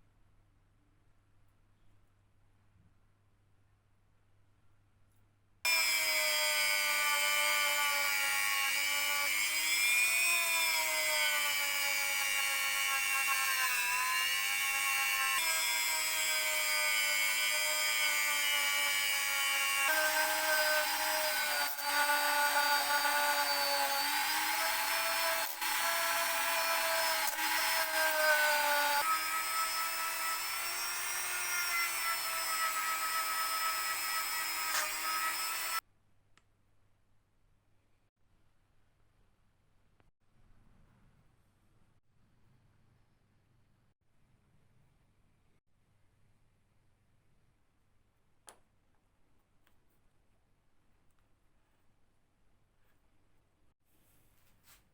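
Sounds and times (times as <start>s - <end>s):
power tool motor whine: 5.7s - 35.8s.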